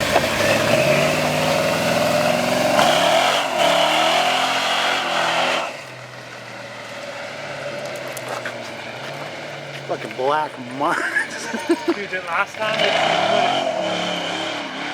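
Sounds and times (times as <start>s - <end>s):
truck engine revving hard: 0.0s - 5.9s, 11.2s - 14.9s
tires squealing: 0.0s - 14.9s.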